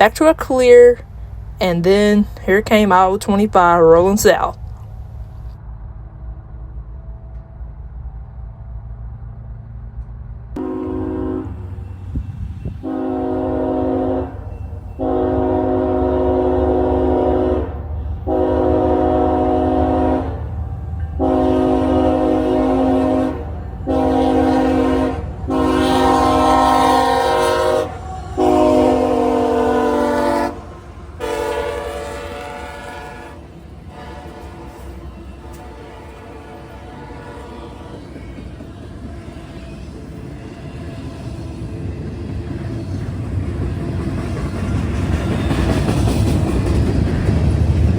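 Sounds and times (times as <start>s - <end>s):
train rumbling by: 0.0s - 47.9s
locomotive air horn blasts: 10.6s - 38.0s.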